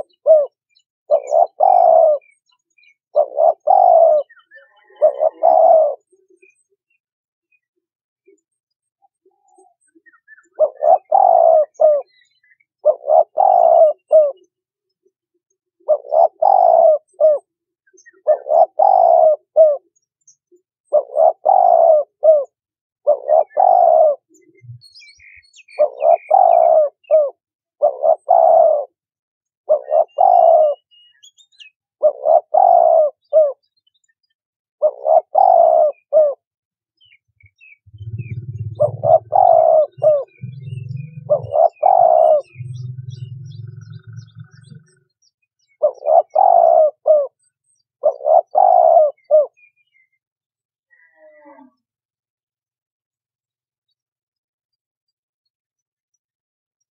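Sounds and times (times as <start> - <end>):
dove cooing: 0.0 - 2.4, 3.1 - 6.6, 9.2 - 14.5, 15.8 - 19.9, 20.9 - 29.0, 29.7 - 30.9, 32.0 - 33.7, 34.8 - 36.4, 37.5 - 49.7
small birds chirping faintly: 0.0 - 36.4, 37.0 - 52.0
low hum: 37.9 - 39.2.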